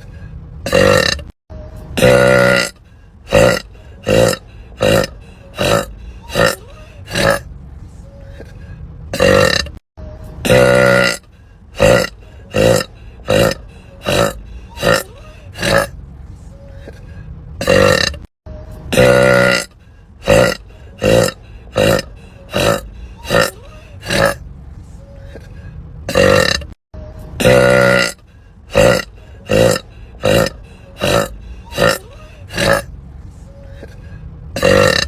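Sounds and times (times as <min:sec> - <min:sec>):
woman burping: 0:00.6 - 0:01.3, 0:02.0 - 0:02.7, 0:03.3 - 0:07.4, 0:09.2 - 0:09.8, 0:10.4 - 0:11.2, 0:11.8 - 0:15.9, 0:17.6 - 0:18.3, 0:26.1 - 0:26.8, 0:27.4 - 0:32.9, 0:34.6 - 0:35.0.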